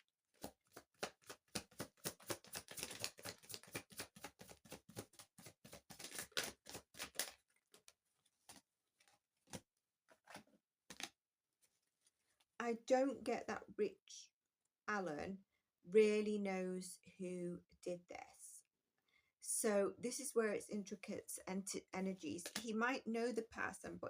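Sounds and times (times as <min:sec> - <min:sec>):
cards being shuffled: 0:00.3 - 0:11.2.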